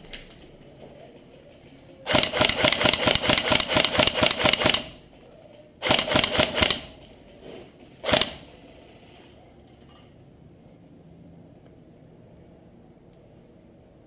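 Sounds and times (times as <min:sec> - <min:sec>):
airsoft rifle full-auto bursts: 0:02.1 - 0:05.0, 0:05.8 - 0:07.1, 0:08.0 - 0:08.6.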